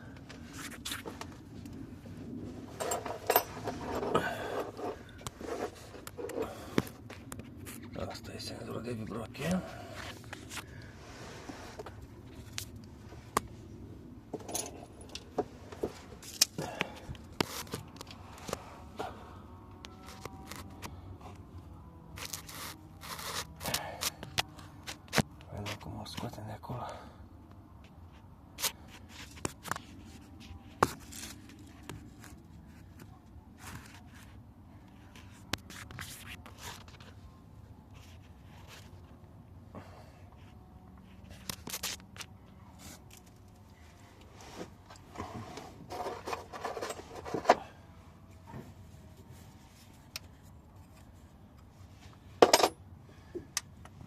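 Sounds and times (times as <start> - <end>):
metal tools scraping and rustling: 2.6 - 6.5, 14.3 - 16.4, 45.6 - 47.6, 52.4 - 52.8
metal tools clinking: 2.7 - 5.0, 14.4 - 15.2, 52.4 - 52.8.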